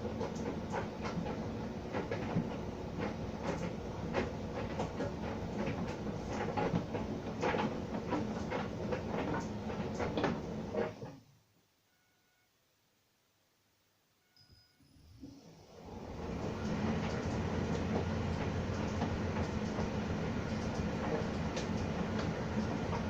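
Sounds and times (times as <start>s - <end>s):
laundry knocking inside dryer: 0.0s - 11.0s, 16.1s - 23.0s
tumble dryer drum rumbling: 0.0s - 11.1s, 15.7s - 23.0s.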